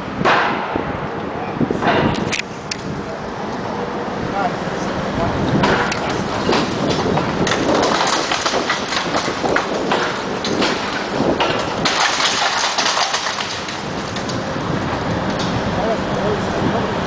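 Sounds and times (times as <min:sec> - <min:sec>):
bricks and rubble clattering down: 0:05.6 - 0:14.6.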